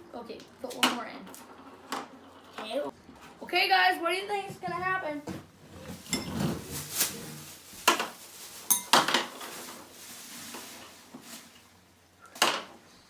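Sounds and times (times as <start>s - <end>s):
soft rustling: 5.7s - 11.8s
kitchenware knocks and clinks: 6.0s - 6.6s, 8.7s - 9.3s.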